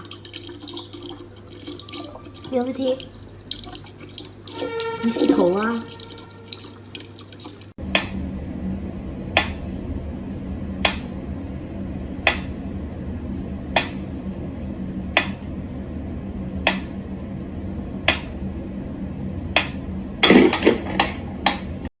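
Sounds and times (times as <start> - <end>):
water dripping into sink: 0.0 - 8.1
low hiss and hum: 0.0 - 21.9.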